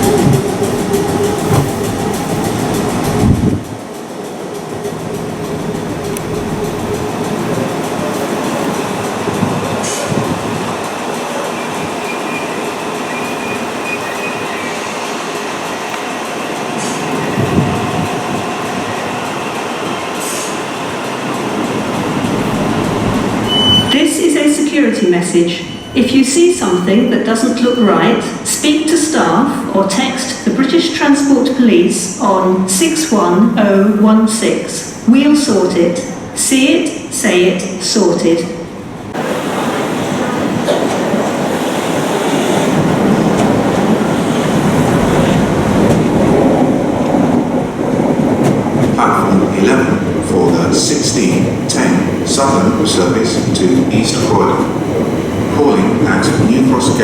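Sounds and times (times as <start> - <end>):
train wheels on rail: 0.0 - 24.9, 37.8 - 57.0
brief high tone: 23.5 - 24.0.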